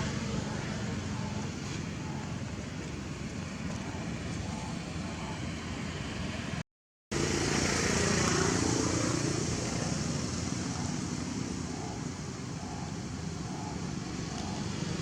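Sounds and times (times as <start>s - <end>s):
motor vehicle passing: 0.0s - 15.0s
outdoor background noise: 0.0s - 15.0s.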